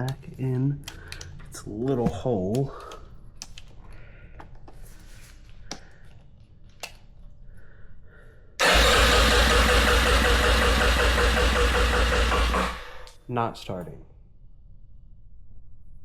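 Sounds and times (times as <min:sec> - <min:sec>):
small clicks and handling noises: 0:00.0 - 0:07.4
electric starter cranking engine: 0:08.6 - 0:13.2.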